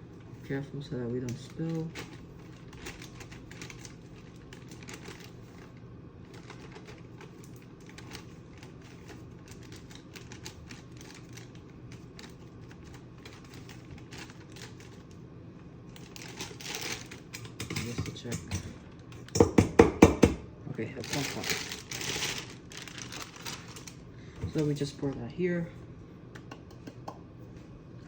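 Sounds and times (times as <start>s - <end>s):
steady low hum: 0.0s - 28.0s
dry mix ticking and rustling: 1.2s - 15.2s, 21.0s - 24.0s.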